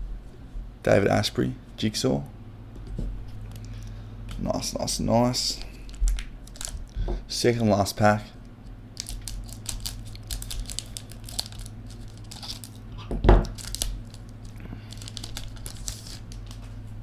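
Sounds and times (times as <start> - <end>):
steady low hum: 0.0 - 17.0
foil wrapper tearing and crinkling: 5.5 - 7.0, 9.0 - 16.7.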